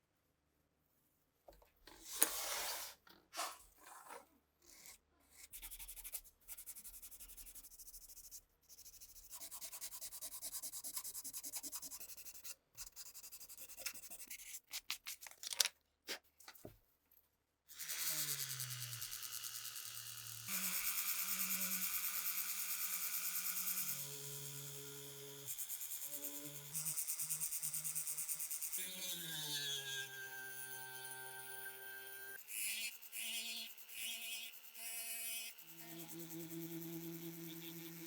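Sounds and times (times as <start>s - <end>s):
small electric tool humming: 17.7s - 38.0s.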